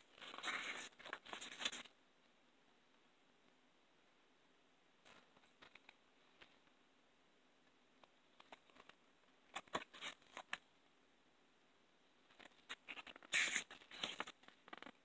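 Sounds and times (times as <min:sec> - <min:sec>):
paper and cardboard rustling: 0:00.1 - 0:01.9, 0:12.3 - 0:15.0.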